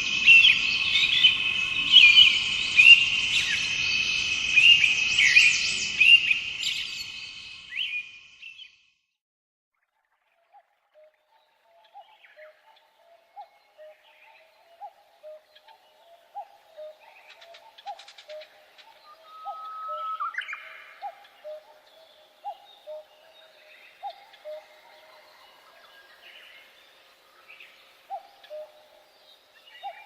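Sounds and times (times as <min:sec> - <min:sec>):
loud rising bird whistle: 0:00.0 - 0:08.6, 0:17.8 - 0:23.1
high bird chirps and trills: 0:00.0 - 0:08.8, 0:11.8 - 0:30.0
low bird call: 0:14.7 - 0:25.7.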